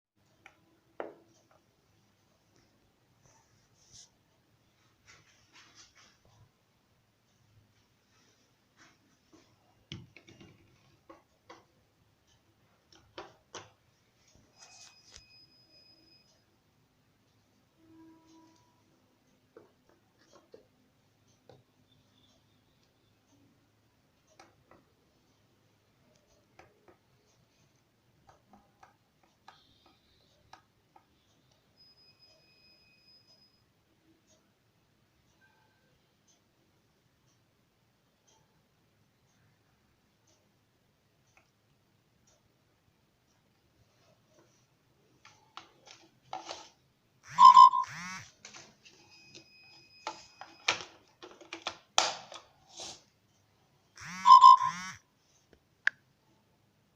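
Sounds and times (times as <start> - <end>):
faint clicks and taps: 0.2 - 4.2, 7.3 - 14.4, 18.3 - 23.5, 24.2 - 31.7, 39.2 - 46.9
faint high beep: 14.5 - 16.6, 31.2 - 33.7, 47.3 - 48.2, 49.0 - 50.7, 54.0 - 55.0.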